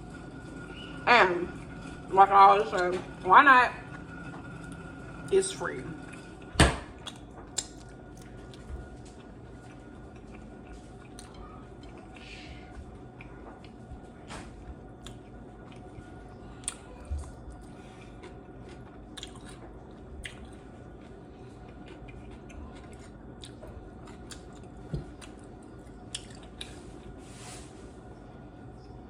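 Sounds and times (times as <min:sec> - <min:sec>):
faint steady hum: 0:00.0 - 0:29.0
person chewing wetly: 0:06.0 - 0:27.2.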